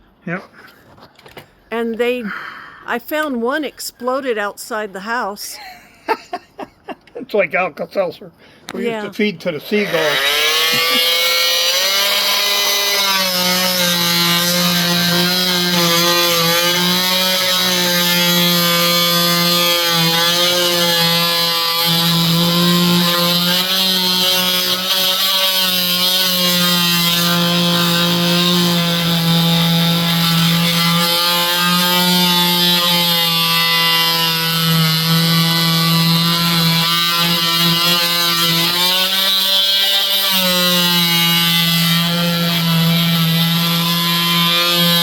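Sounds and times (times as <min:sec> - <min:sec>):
electric router cutting wood: 0:09.1 - 0:45.0.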